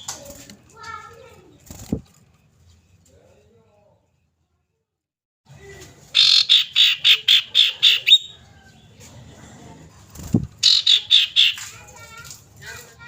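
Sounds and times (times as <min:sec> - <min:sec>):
bird chattering call: 0:06.2 - 0:08.3, 0:10.6 - 0:11.7.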